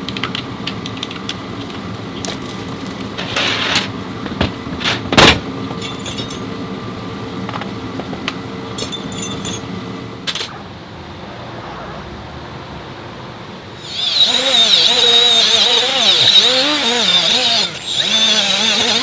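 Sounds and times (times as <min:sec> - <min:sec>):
metallic clinks and jingling: 0:05.8 - 0:06.5, 0:08.8 - 0:09.7
mechanical hum: 0:12.6 - 0:19.0.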